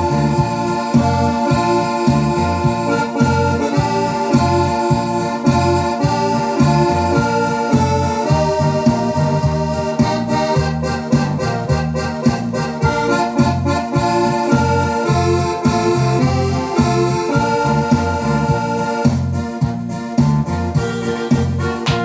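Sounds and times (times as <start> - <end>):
electronic keyboard music: 0.0 - 22.0.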